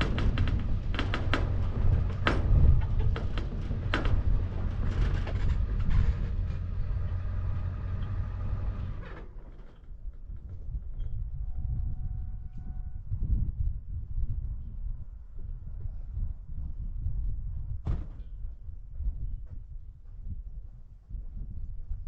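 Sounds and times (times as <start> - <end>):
knocks and rattles: 0.0 - 11.2
vehicle engine and road rumble: 0.0 - 11.4.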